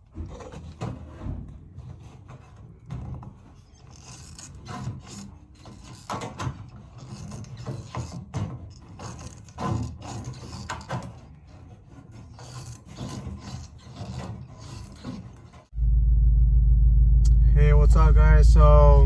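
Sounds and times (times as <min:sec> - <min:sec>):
hand tool scraping and rasping: 0:00.0 - 0:15.7
loud low rumble: 0:15.7 - 0:19.0.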